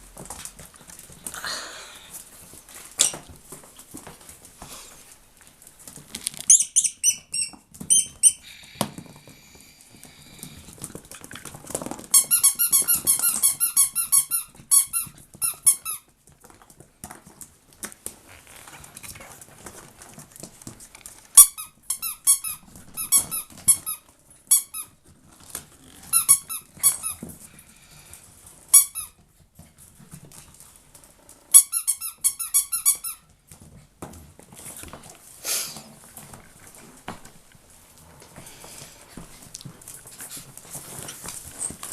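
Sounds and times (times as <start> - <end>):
puppies squeaking: 3.0 - 3.3, 6.3 - 8.5, 12.1 - 16.1, 21.4 - 25.0, 26.0 - 27.2, 28.7 - 29.2, 31.5 - 33.3
scuffling and pattering: 32.6 - 41.9.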